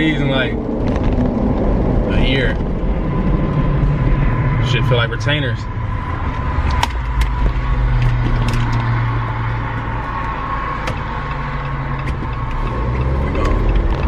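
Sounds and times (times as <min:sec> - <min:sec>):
car engine and road rumble: 0:00.0 - 0:14.0.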